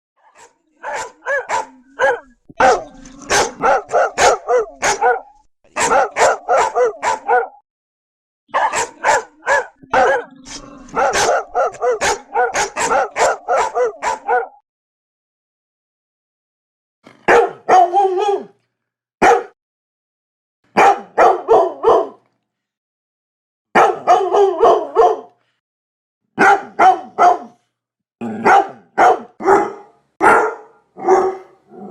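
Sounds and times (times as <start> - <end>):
dog barking: 0.2 - 7.6, 8.5 - 14.6, 17.2 - 18.6, 19.2 - 19.6, 20.8 - 22.2, 23.7 - 25.4, 26.4 - 27.6, 28.3 - 31.9.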